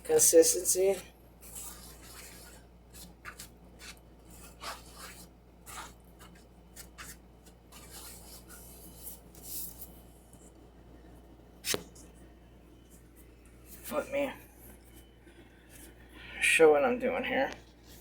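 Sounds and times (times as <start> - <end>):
spoon scraping batter in dish: 0.9 - 10.0.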